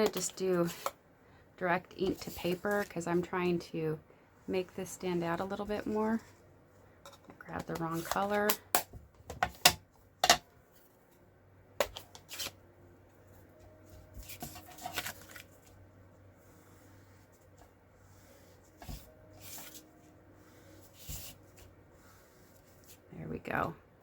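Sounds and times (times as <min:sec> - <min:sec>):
paper rustling and rubbing: 0:02.0 - 0:03.1, 0:13.9 - 0:15.8, 0:16.4 - 0:23.1.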